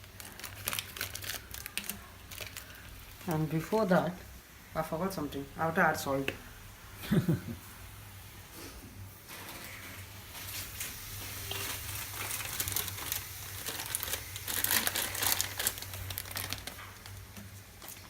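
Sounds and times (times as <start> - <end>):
plastic packet crinkling: 0.0 - 3.9, 10.4 - 18.0.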